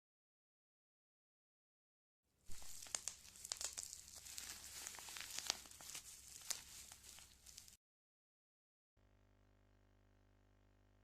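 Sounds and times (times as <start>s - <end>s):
sharp crinkling crackles: 2.5s - 7.8s.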